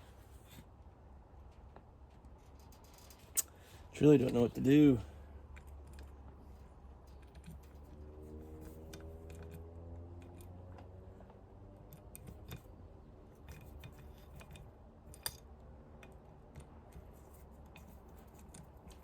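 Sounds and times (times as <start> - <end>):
metallic clicks of hand tools: 8.6 - 12.8, 13.4 - 19.0.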